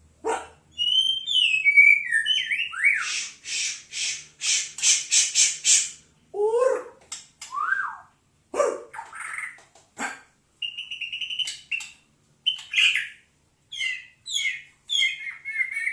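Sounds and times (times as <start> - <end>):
bird singing: 0.7 - 6.0, 10.6 - 15.9.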